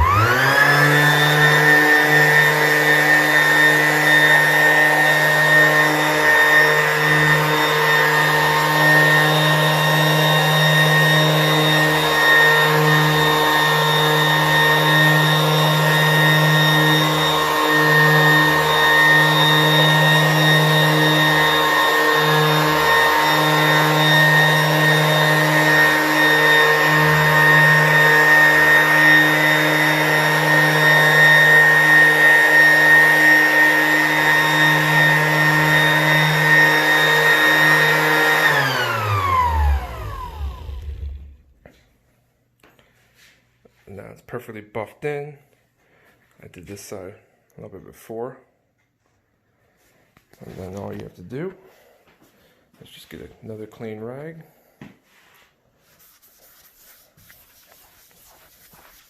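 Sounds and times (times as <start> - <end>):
orbital sander motor hum: 0.0 - 41.5.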